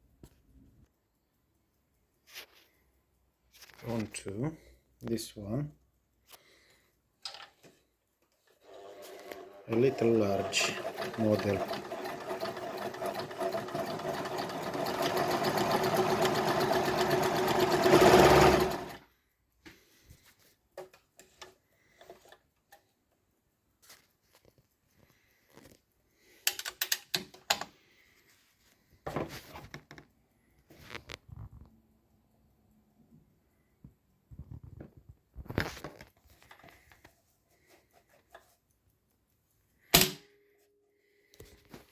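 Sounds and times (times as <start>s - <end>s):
sewing machine stitching: 8.5s - 19.0s.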